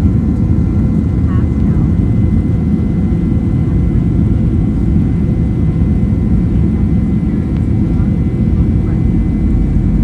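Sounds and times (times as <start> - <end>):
jet engines low rumble: 0.0 - 10.0.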